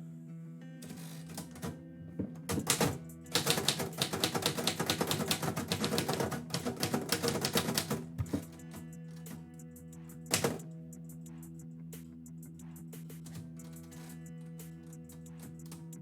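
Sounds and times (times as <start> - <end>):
typewriter keys striking: 0.8 - 1.8, 2.5 - 8.8, 10.3 - 10.6, 13.2 - 14.2.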